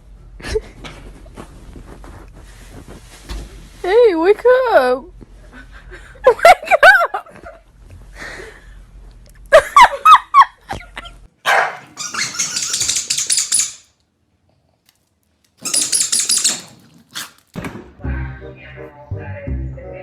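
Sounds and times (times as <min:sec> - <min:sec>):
dog barking: 0:11.4 - 0:12.0.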